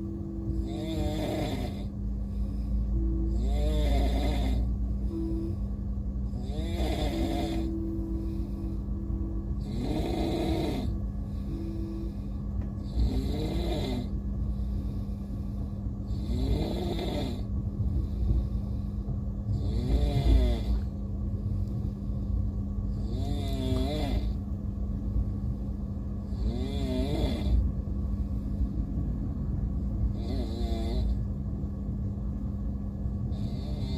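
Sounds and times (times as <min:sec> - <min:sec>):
moving train rumble: 0:00.0 - 0:33.9
person snoring: 0:00.3 - 0:05.6, 0:06.2 - 0:18.8, 0:19.5 - 0:20.9, 0:22.9 - 0:24.4, 0:26.2 - 0:27.7, 0:30.1 - 0:31.3, 0:33.3 - 0:33.9.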